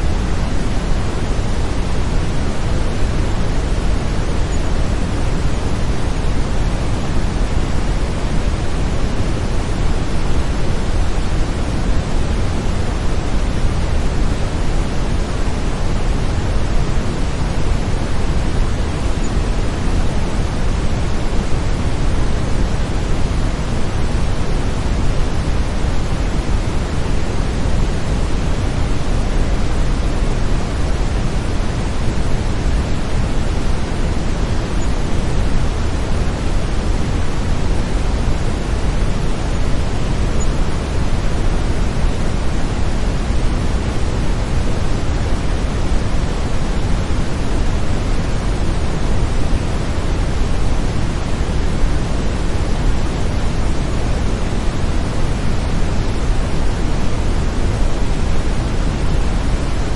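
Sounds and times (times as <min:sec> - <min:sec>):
deep steady hiss: 0:00.0 - 0:59.9.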